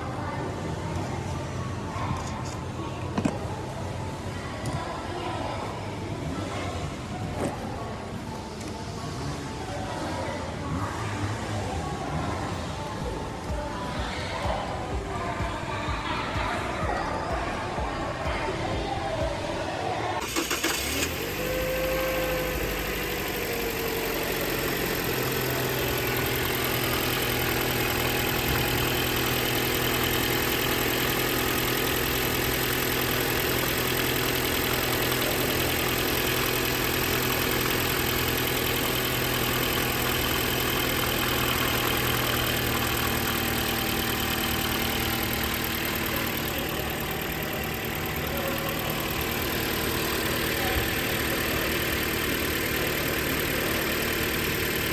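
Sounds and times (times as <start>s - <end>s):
car engine idling: 11.0s - 54.9s.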